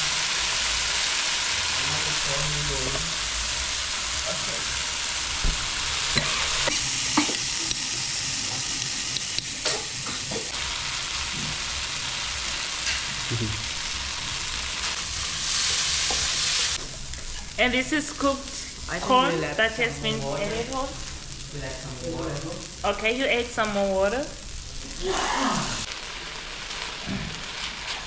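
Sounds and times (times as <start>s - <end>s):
chicken sizzling in a frying pan: 0.0s - 28.0s
utensil clicking against pan: 6.7s - 10.5s.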